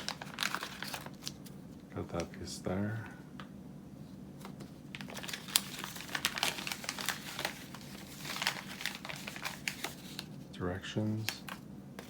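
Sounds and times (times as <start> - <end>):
plastic packaging crinkling: 0.0 - 2.3, 4.4 - 10.4, 11.1 - 11.6.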